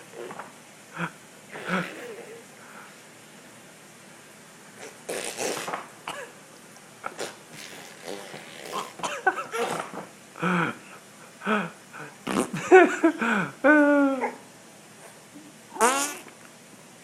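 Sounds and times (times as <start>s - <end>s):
baby blowing raspberries: 0.0s - 0.4s, 1.0s - 2.4s, 4.8s - 5.8s, 7.0s - 10.0s, 12.3s - 12.6s, 15.8s - 16.3s.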